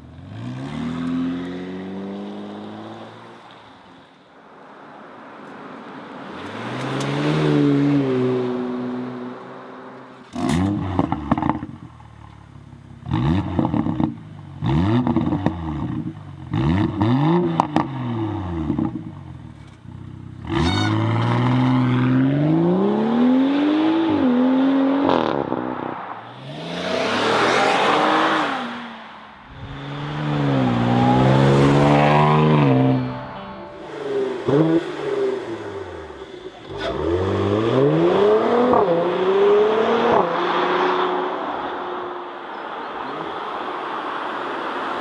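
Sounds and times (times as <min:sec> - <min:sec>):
car engine revving: 0:20.4 - 0:42.1.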